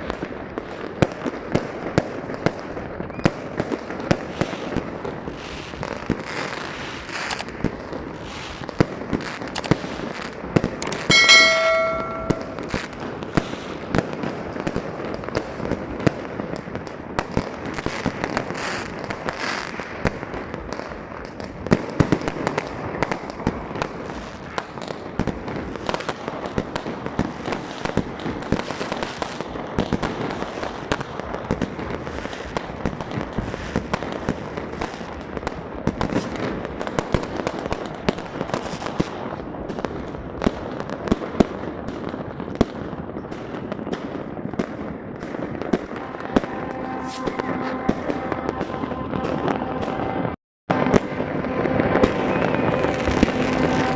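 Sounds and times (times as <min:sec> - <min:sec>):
firecrackers banging and popping: 0:00.0 - 0:53.9
bell-like ringing tone: 0:10.8 - 0:12.8, 0:46.1 - 0:53.9.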